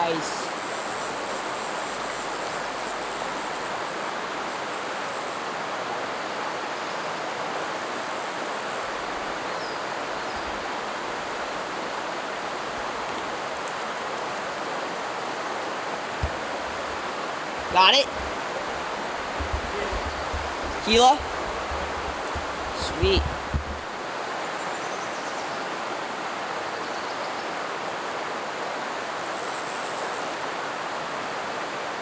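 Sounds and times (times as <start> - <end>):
water running over rocks: 0.0 - 24.2
short knock: 16.2 - 24.0.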